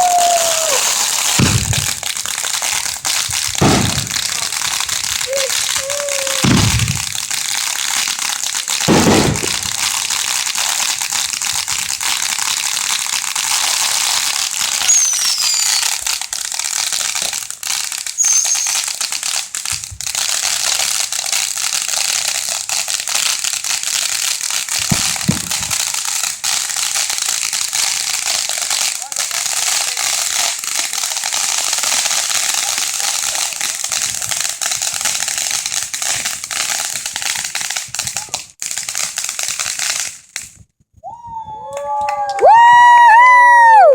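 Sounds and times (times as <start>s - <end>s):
fireworks whistling: 0.0s - 7.4s, 8.8s - 10.2s, 13.6s - 16.1s, 18.1s - 19.9s, 42.4s - 43.9s
fireworks booming: 0.0s - 10.3s, 14.8s - 16.0s, 24.8s - 25.8s
fireworks crackling: 0.0s - 43.9s.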